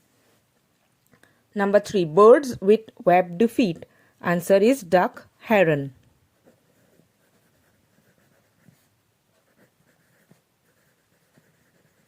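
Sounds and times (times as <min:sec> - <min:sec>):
pen scratching on paper: 0:06.4 - 0:12.0.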